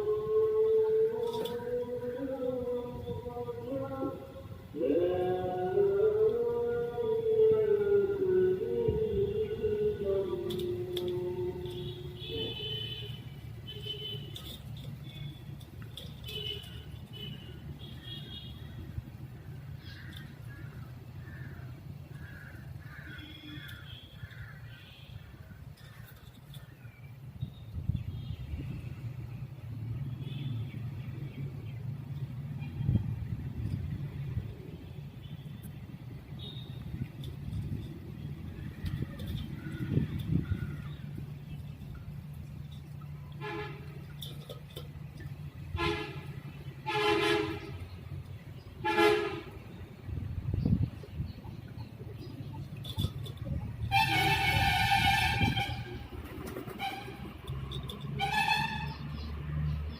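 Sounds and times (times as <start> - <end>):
engine hum: 0.0 - 59.9
vehicle horn honks: 11.7 - 15.4, 16.2 - 18.6, 43.4 - 44.0, 45.7 - 47.8, 48.8 - 49.6, 53.8 - 56.1, 56.7 - 59.1
harsh bird calls: 19.4 - 27.6.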